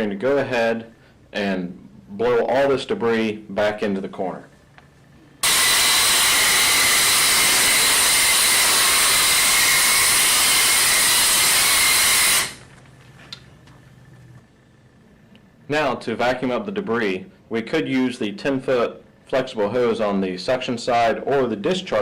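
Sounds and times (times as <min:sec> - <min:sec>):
loud steady blast of air: 0:05.4 - 0:12.7.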